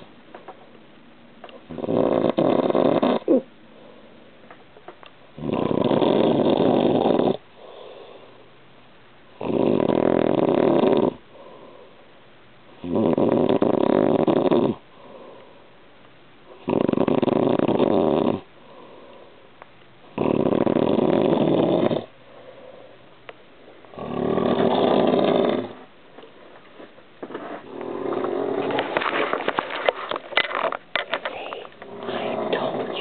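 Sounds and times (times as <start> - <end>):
man snoring loudly: 1.7 - 3.3, 5.4 - 7.4, 9.4 - 11.2, 12.8 - 14.8, 16.6 - 18.4, 20.2 - 22.1, 23.9 - 25.8
quiet breathing: 3.6 - 4.4, 7.4 - 8.6, 11.2 - 12.2, 14.8 - 15.8, 18.5 - 19.6, 22.0 - 23.9, 31.0 - 33.0.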